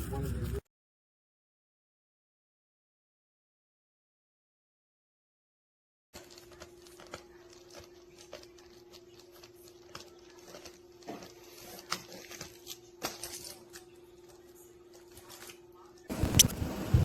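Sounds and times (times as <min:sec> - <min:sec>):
low steady hum: 0:13.0 - 0:17.0.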